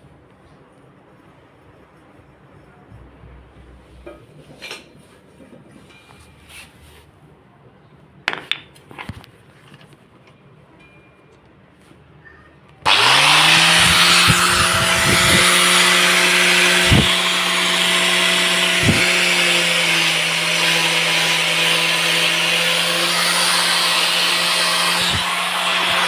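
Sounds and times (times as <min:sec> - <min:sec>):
angle grinder grinding metal: 0:12.9 - 0:26.0.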